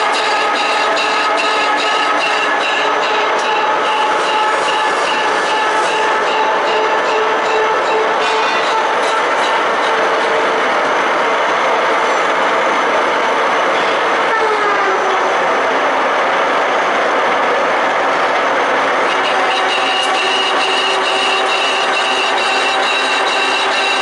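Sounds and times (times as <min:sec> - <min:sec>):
machine whining tones: 0:00.0 - 0:10.8, 0:19.0 - 0:24.0
lathe mechanical noise: 0:00.0 - 0:14.2, 0:15.1 - 0:24.0.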